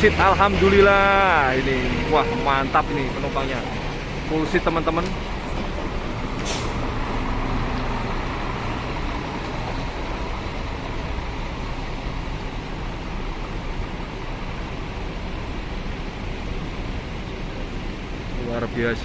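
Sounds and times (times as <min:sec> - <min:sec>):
bus engines running: 0:00.0 - 0:19.0
road traffic noise: 0:00.0 - 0:19.0
short hiss: 0:06.4 - 0:06.9.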